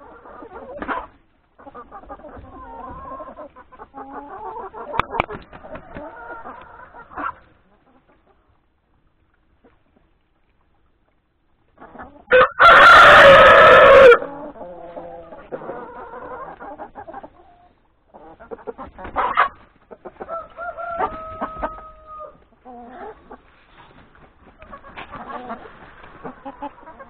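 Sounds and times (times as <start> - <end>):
hens clucking and calling: 0.0 - 27.0
rooster crowing loudly: 12.3 - 14.3, 20.3 - 22.4.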